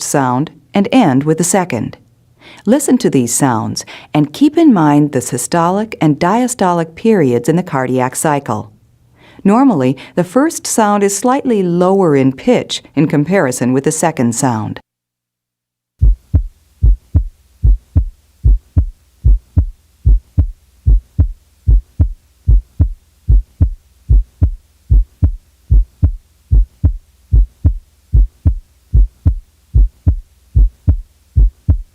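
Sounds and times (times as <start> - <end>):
heartbeat through stethoscope: 16.0 - 31.9.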